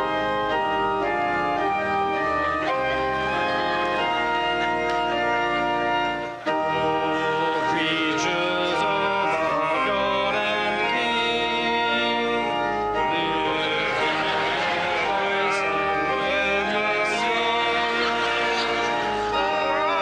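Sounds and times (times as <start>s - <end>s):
organ playing hymn chords: 0.0s - 20.0s
voices singing: 6.7s - 20.0s.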